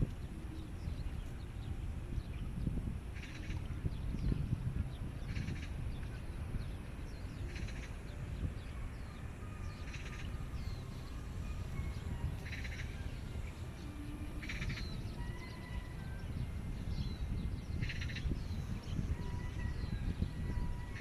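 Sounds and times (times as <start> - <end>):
low outdoor rumble: 0.0 - 21.0
bird chirps: 7.0 - 21.0.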